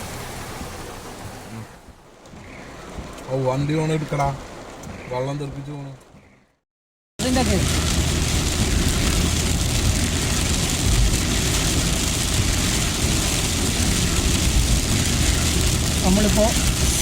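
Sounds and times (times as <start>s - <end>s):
water spray hiss: 0.0s - 1.8s, 14.8s - 17.0s
car engine and tyres rumbling: 0.0s - 6.5s, 7.2s - 17.0s.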